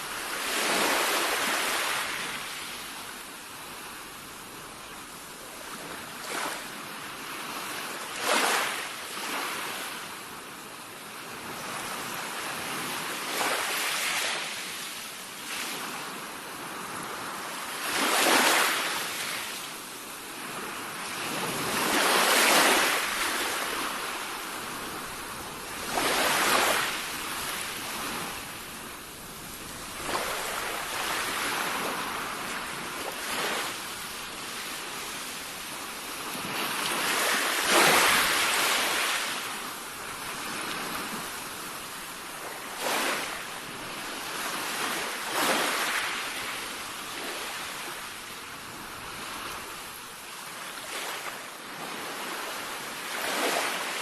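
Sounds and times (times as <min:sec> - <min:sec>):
sea waves breaking: 0:20.5 - 0:35.3, 0:35.9 - 0:48.2.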